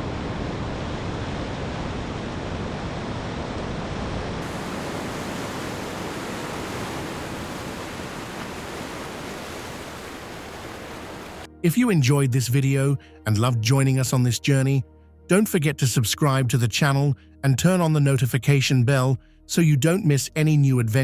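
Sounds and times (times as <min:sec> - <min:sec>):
ocean surf rushing: 0:04.4 - 0:11.5.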